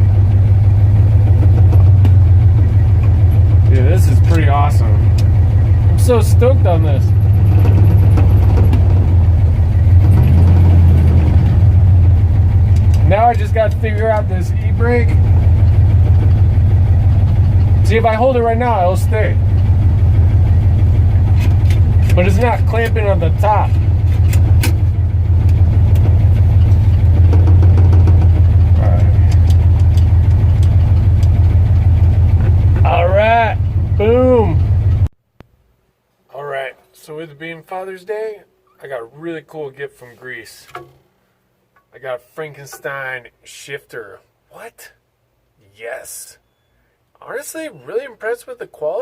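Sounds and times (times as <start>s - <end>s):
truck engine droning: 0.0s - 35.1s.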